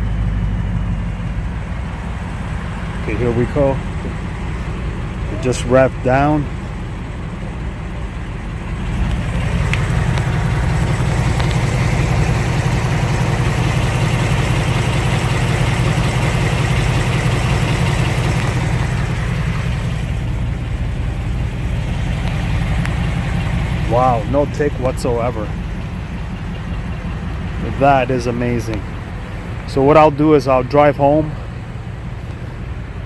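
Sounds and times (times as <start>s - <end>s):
car engine idling: 0.0s - 33.0s.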